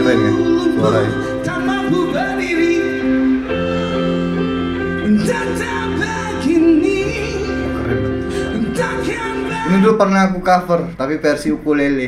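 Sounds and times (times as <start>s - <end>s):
man singing: 0.0s - 4.2s, 5.0s - 10.2s
slow rock band playing: 0.0s - 9.8s.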